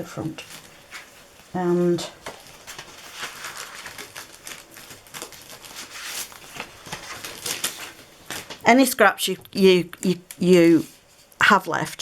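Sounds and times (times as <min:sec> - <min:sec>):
paper and card rustling: 0:00.2 - 0:08.9.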